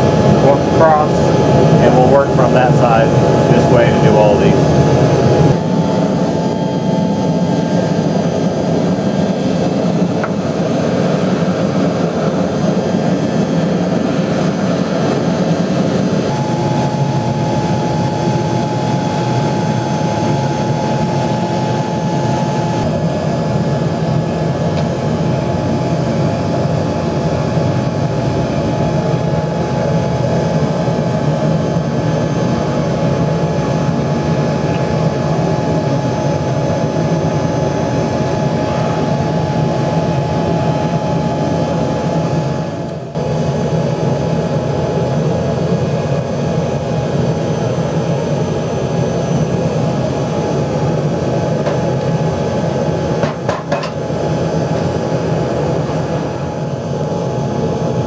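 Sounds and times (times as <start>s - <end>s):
furnace burner rushing: 0.0s - 23.2s.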